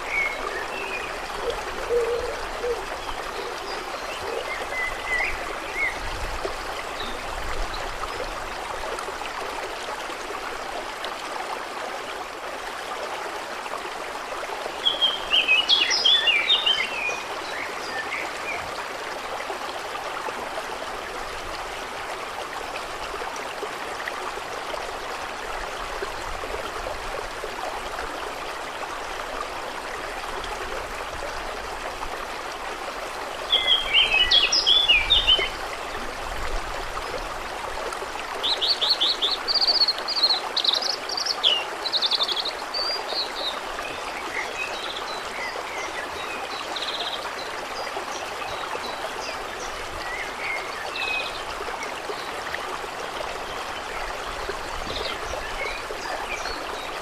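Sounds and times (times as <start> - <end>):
songbird singing: 0.0 - 6.0, 14.8 - 18.7, 33.5 - 35.6
water rushing: 0.0 - 57.0.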